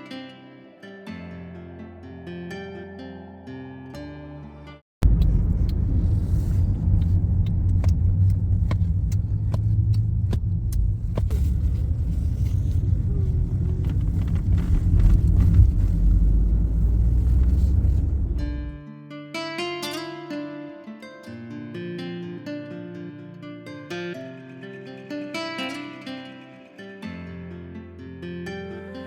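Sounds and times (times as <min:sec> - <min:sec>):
car road and engine rumble: 0:05.0 - 0:18.8.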